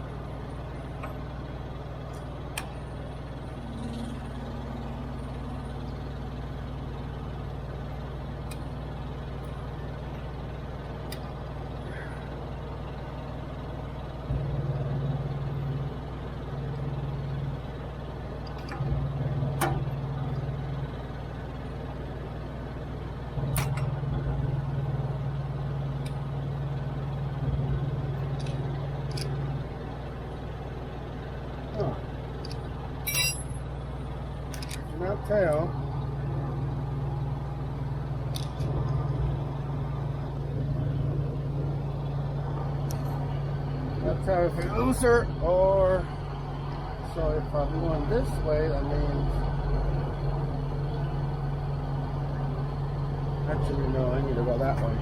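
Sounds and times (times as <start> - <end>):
truck engine idling: 0.0 - 55.0.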